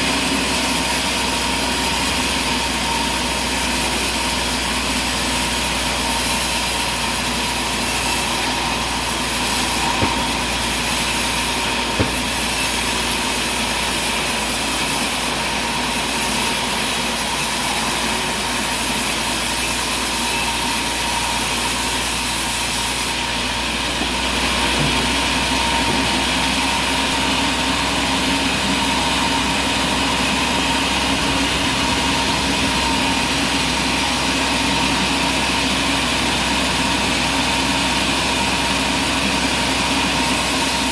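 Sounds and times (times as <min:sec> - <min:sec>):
sawmill machinery whining: 0:00.0 - 0:40.9
brief knocks: 0:09.8 - 0:10.6, 0:11.9 - 0:12.4.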